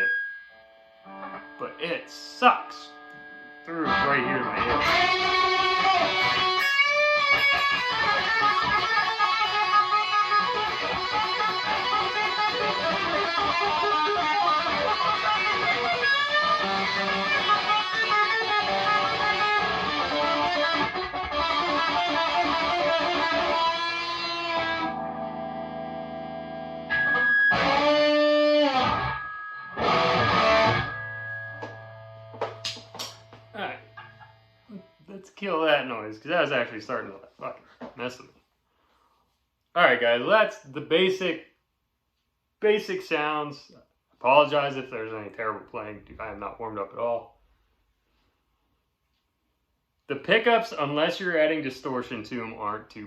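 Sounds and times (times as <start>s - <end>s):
high guitar feedback tone: 0.0s - 35.1s
overdriven electric guitar riff: 0.0s - 35.1s.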